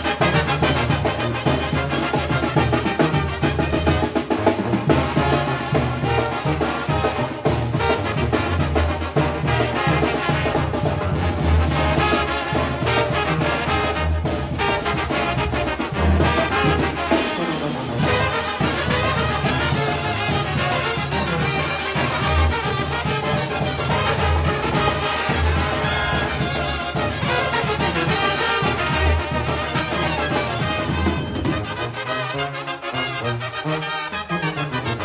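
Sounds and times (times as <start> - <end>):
brass band playing: 0.0 - 35.0.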